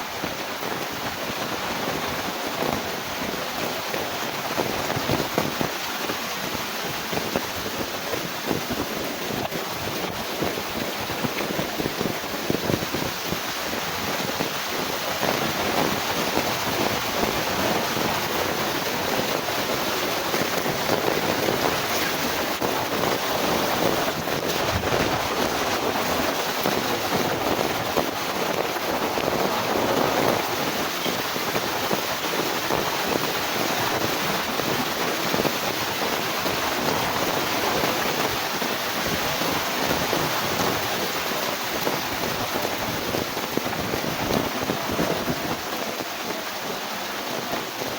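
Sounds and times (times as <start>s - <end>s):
heavy rain: 0.0s - 47.9s
strong gusting wind: 0.0s - 47.9s
wind buffeting microphone: 0.0s - 47.9s.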